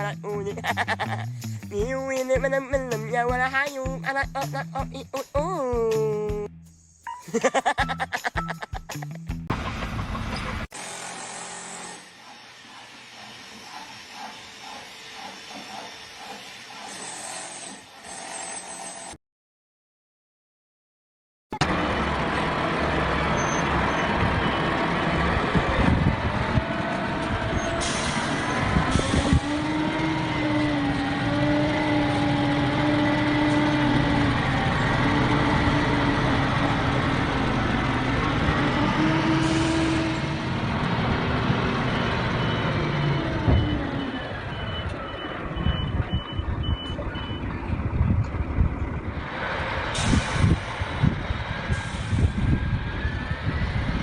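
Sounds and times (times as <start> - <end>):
heavy engine running: 9.5 - 17.0, 21.6 - 54.0
reversing alarm beeping: 41.6 - 47.6.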